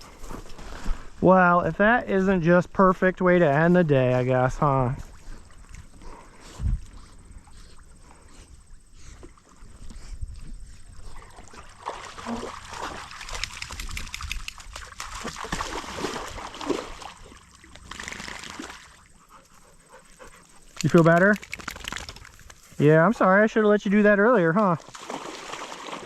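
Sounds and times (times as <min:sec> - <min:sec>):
dog splashing in water: 0:11.2 - 0:19.1, 0:20.8 - 0:22.4, 0:24.9 - 0:26.0.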